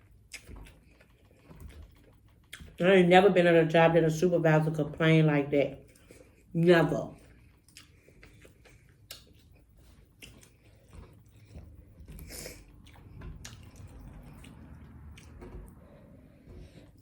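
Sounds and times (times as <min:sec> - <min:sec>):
chewing with mouth clicks: 0:00.0 - 0:02.8, 0:07.2 - 0:16.8.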